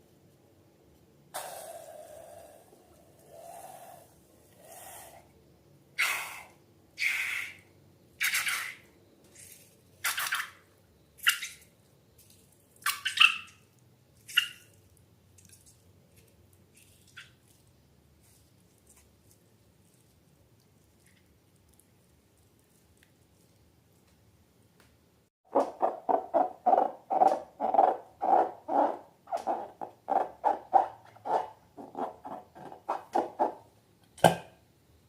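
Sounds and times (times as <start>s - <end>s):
slime squelching: 12.2s - 24.1s.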